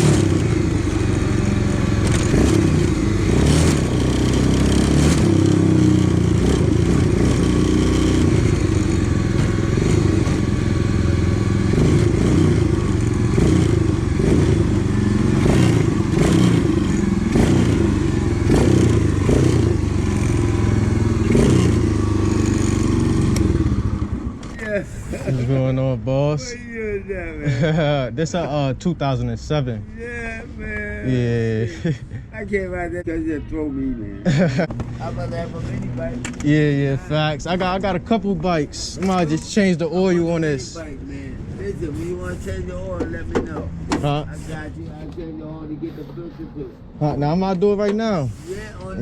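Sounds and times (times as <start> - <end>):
pocket bike engine revving: 0.0 - 24.4
clatter: 2.0 - 2.8.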